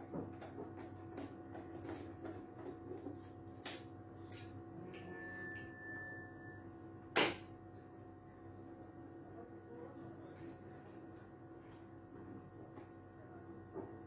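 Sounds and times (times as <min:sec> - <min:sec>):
ringing metallic pings: 0:04.8 - 0:06.7.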